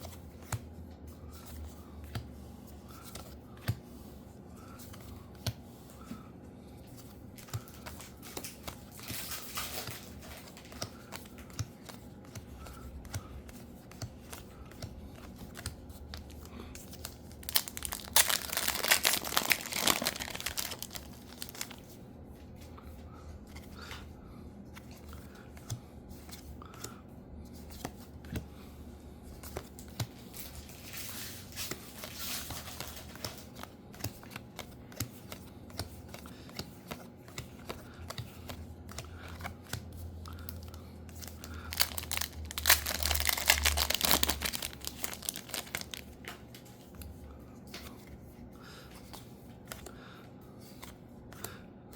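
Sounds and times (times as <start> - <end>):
soft rustling and handling: 0.0 - 51.6
foil packs tearing and crinkling: 17.4 - 21.8, 41.5 - 46.0.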